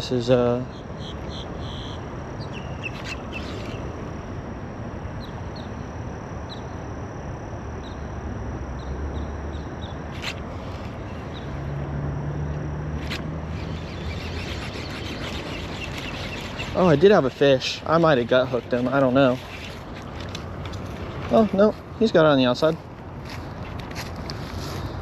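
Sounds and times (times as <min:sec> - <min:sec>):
high insect whine: 0:00.0 - 0:25.0
low hum: 0:00.0 - 0:25.0
bird chirps: 0:00.7 - 0:03.9, 0:13.5 - 0:17.4.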